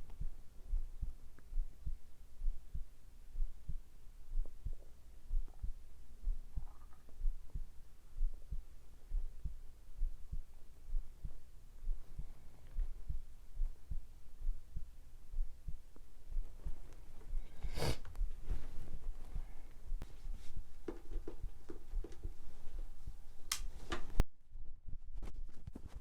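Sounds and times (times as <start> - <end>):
heartbeat thuds: 0.0 - 26.0
faint stomach gurgle: 4.4 - 8.4.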